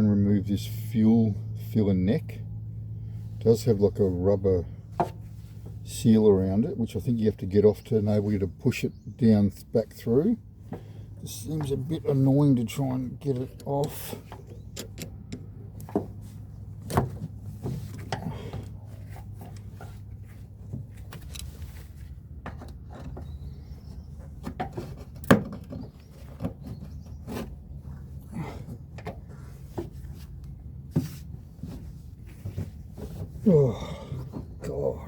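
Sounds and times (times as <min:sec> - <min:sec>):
steady low hum: 0:00.0 - 0:35.0
tools clicking and knocking on metal: 0:13.4 - 0:16.2.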